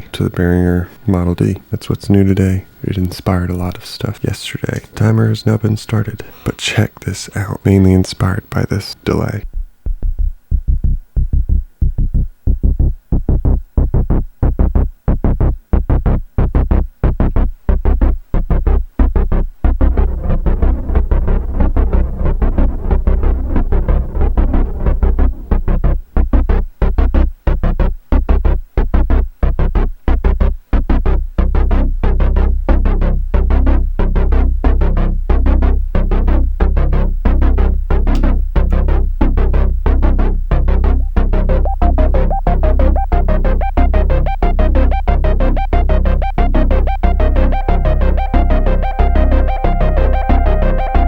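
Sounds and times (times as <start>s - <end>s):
pulsing synth bass line: 9.5s - 26.6s, 31.0s - 51.0s
higher synth melody: 38.1s - 38.9s, 40.7s - 51.0s.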